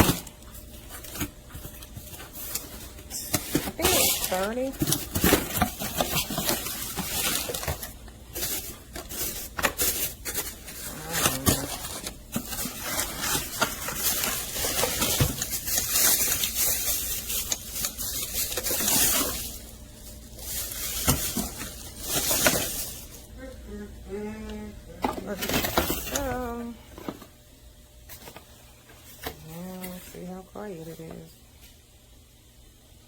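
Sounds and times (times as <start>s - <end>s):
packaging rustling and crinkling: 0.0s - 23.3s, 25.0s - 27.4s.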